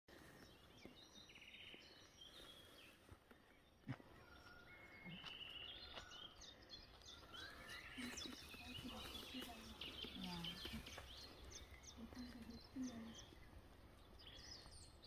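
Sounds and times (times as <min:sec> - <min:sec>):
faint birds chirping: 0:00.1 - 0:15.0.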